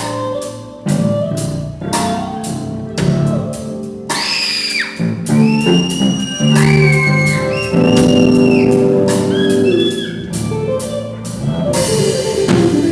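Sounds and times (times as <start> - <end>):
music beat: 0.9 - 12.9
sliding high synth notes: 4.5 - 11.6
organ-like keyboard chords: 4.9 - 12.9.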